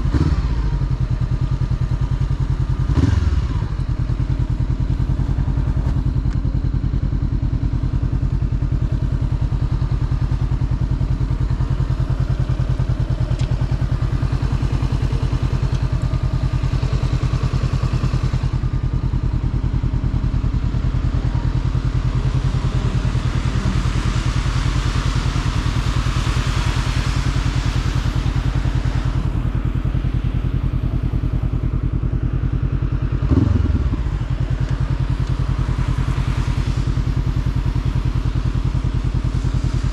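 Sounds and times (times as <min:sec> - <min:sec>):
motorcycle engine running: 0:00.0 - 0:39.9
hiss: 0:20.1 - 0:31.2, 0:33.7 - 0:39.9.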